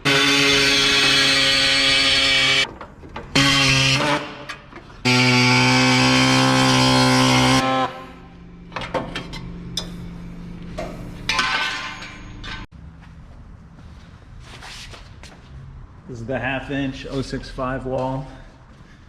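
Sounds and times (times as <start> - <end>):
loud electric buzz: 0.0 - 2.7, 3.3 - 8.7
metal parts clinking: 11.2 - 12.7.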